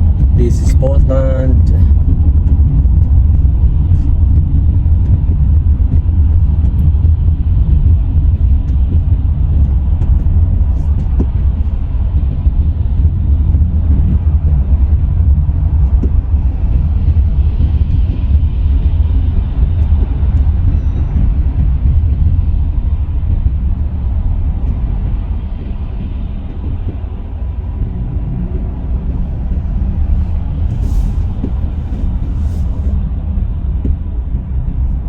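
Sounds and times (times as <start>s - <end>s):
car engine and road noise: 0.0s - 35.0s.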